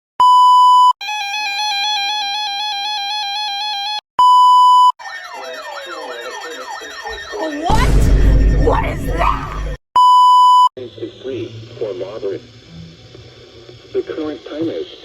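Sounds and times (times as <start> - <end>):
high electronic beep: 4.2 - 10.7
buzzy multi-pitched tone: 5.0 - 9.8
siren sweeps rising and falling: 5.0 - 9.8.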